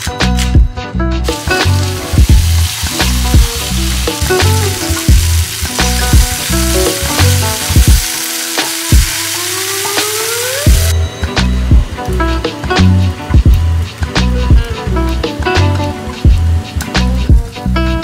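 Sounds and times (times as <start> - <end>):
background music with a beat: 0.0 - 18.0
food sizzling in a pan: 1.2 - 10.9.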